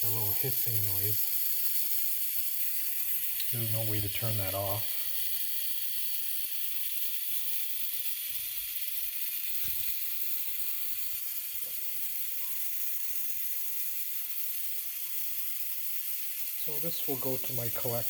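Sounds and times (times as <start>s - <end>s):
motorized mechanism high hiss: 0.0s - 18.0s.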